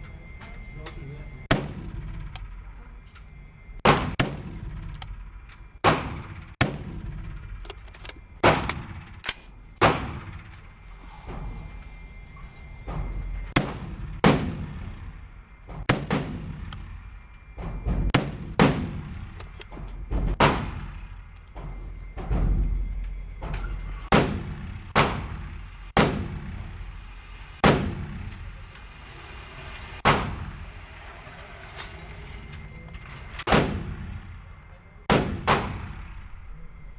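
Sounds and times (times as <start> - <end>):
rifle shots with echo: 33.5 - 34.3, 35.1 - 36.2.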